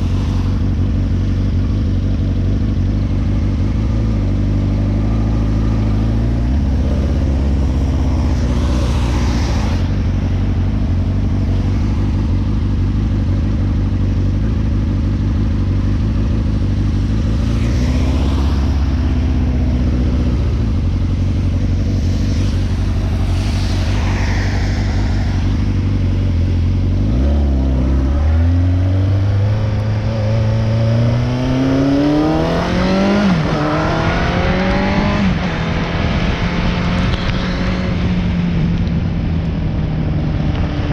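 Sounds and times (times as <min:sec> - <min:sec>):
motorcycle engine running: 0:00.0 - 0:40.9
brief rushing swells: 0:21.9 - 0:26.2.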